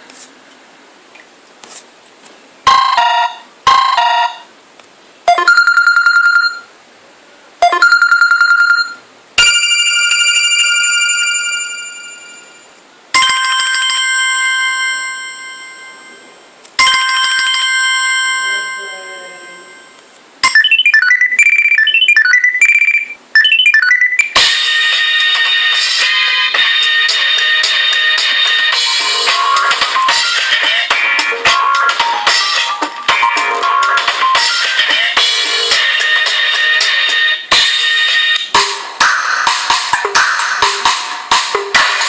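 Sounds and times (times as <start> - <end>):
trilled ring tones: 2.7 - 4.5, 5.3 - 6.7, 7.6 - 28.0
bell-like chimes: 9.4 - 20.6.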